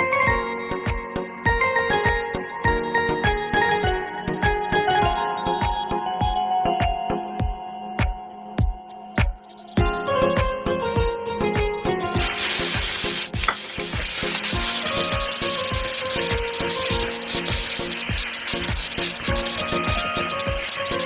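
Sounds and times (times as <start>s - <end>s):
background music with steady beat: 0.0s - 21.0s
food sizzling in hot oil: 9.0s - 10.3s, 11.8s - 21.0s.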